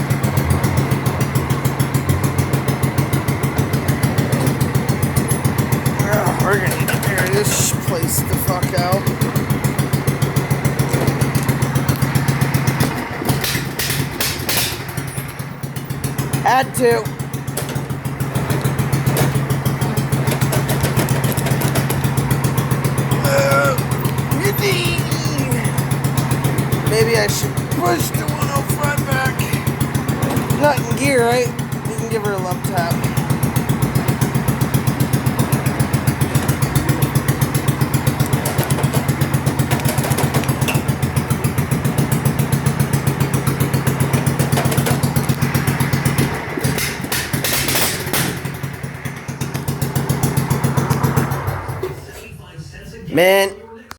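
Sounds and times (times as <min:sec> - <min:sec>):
small engine idling: 0:00.0 - 0:52.5.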